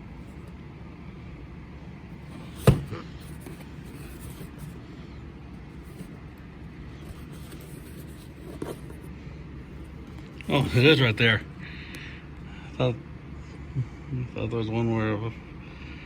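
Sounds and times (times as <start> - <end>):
sharp knock: 2.5 - 3.0.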